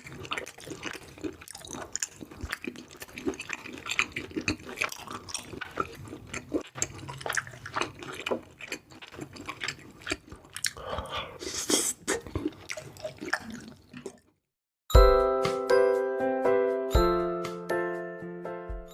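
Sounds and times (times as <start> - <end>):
close-miked chewing and biting: 0.0 - 14.4
wet mouth clicks: 3.3 - 14.3.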